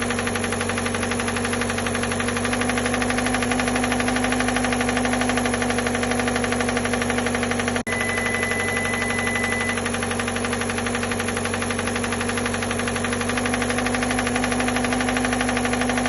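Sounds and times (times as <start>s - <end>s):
ticking engine knock: 0.0s - 7.9s, 8.8s - 16.0s
car engine running: 0.0s - 16.0s
steady high tone: 7.9s - 9.8s.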